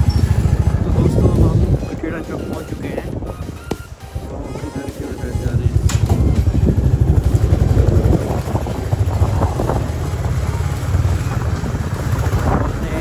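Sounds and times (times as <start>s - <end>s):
motorcycle engine running: 0.0s - 13.0s
wind buffeting microphone: 0.0s - 13.0s.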